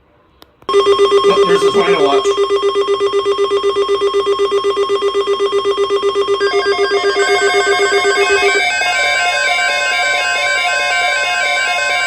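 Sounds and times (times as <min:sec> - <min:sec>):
stepping higher alert tones: 0:00.7 - 0:10.6
rapid electronic beeping tone: 0:00.7 - 0:12.0.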